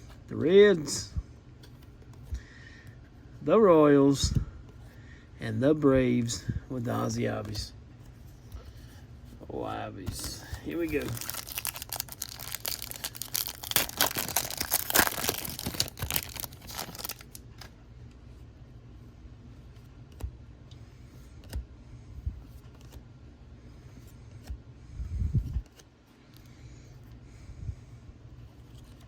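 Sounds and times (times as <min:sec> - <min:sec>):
soft clicks of cards handled: 0:01.5 - 0:03.0, 0:19.6 - 0:21.7, 0:22.4 - 0:23.0, 0:23.9 - 0:24.6, 0:25.4 - 0:27.2, 0:28.4 - 0:29.0
foil wrapper tearing and crinkling: 0:10.7 - 0:17.4.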